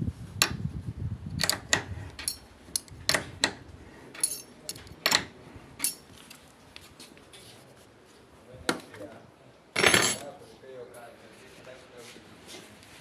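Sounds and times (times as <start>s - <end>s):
hard objects clinking: 4.2s - 6.1s, 9.8s - 10.3s.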